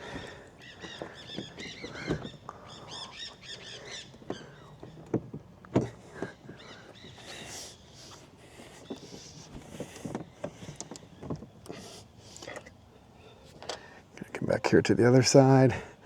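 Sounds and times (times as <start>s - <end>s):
songbird chirping: 0.0s - 9.5s.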